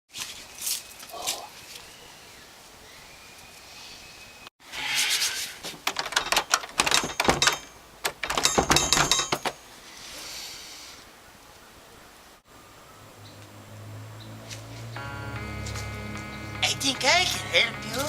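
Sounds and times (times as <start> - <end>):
door handle rattling: 5.8 - 9.6.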